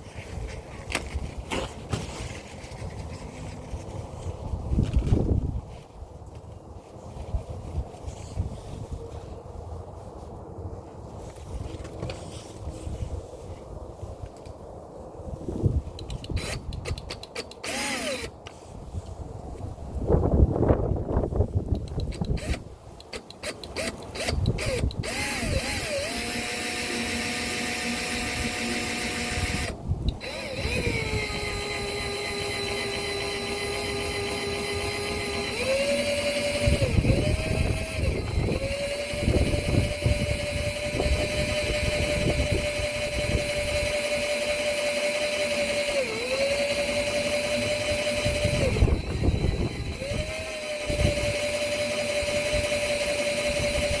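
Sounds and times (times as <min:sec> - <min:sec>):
electric drill whine: 0:16.4 - 0:18.4, 0:22.1 - 0:54.0.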